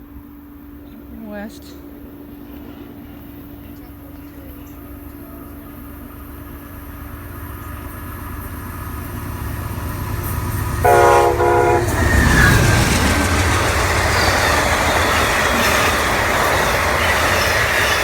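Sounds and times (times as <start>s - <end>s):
diesel locomotive rumble: 0.0s - 18.0s
train wheels rushing past: 0.0s - 18.0s
train horn blasts: 9.5s - 14.6s.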